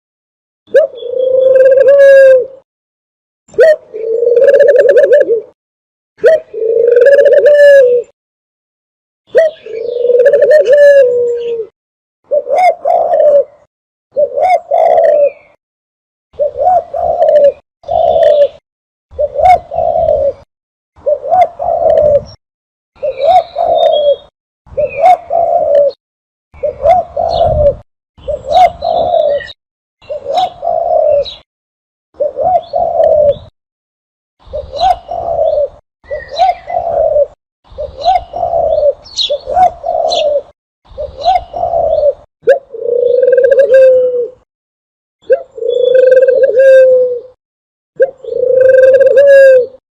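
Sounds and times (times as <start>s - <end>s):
dove cooing call: 0.7s - 2.6s, 3.5s - 5.6s, 6.2s - 8.2s, 9.3s - 11.7s, 12.3s - 15.6s, 16.4s - 22.4s, 23.0s - 26.0s, 26.6s - 31.5s, 32.2s - 33.5s, 34.4s - 44.5s, 45.2s - 47.4s, 48.0s - 49.8s.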